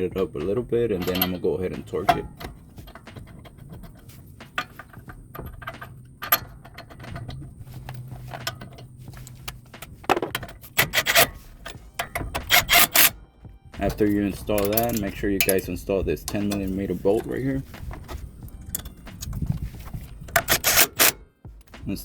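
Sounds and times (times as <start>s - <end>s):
metallic clicks and clinks: 0.9s - 13.1s, 13.8s - 19.6s
socket wrench tightening bolt: 0.9s - 13.2s, 13.8s - 19.6s, 20.3s - 21.2s.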